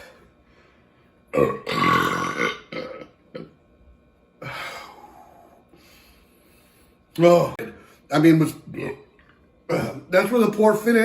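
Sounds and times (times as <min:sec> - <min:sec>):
man burping: 0:01.3 - 0:03.6, 0:08.7 - 0:10.1.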